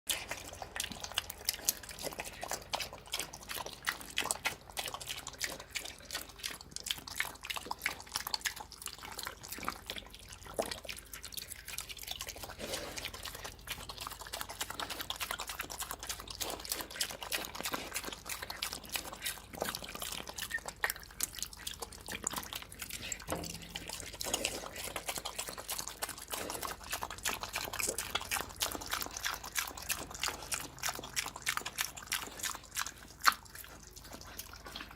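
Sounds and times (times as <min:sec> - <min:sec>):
pig eating wet slop: 0:00.1 - 0:34.9.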